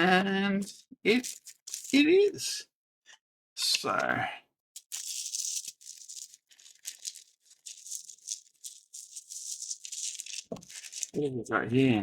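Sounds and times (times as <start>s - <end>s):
packaging rustling and crinkling: 1.2s - 2.0s, 4.8s - 11.2s.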